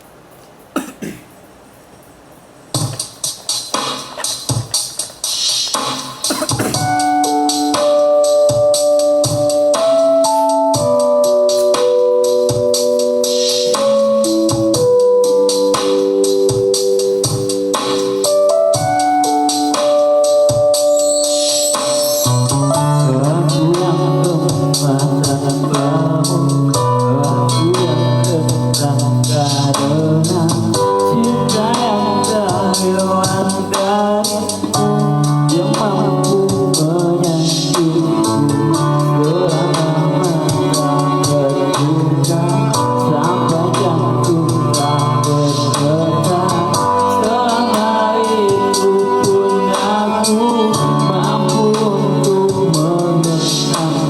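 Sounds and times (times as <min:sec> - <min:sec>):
percussion beat: 0:00.2 - 0:26.8
music with wavering melody: 0:02.7 - 0:54.0
man singing with instruments: 0:22.3 - 0:54.0.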